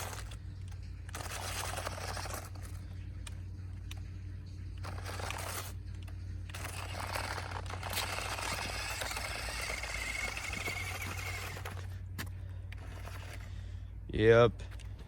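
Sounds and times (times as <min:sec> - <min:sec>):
electric motor whining: 0:00.0 - 0:13.8
steady low hum: 0:00.0 - 0:15.0
tyres scraping over ground: 0:00.0 - 0:15.0.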